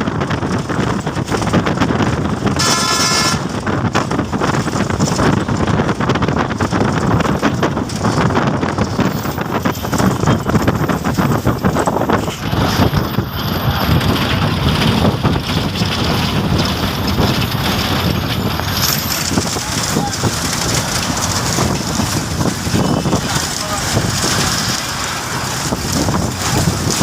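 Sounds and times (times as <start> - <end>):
road and traffic noise: 0.0 - 27.0
wind buffeting microphone: 0.0 - 27.0.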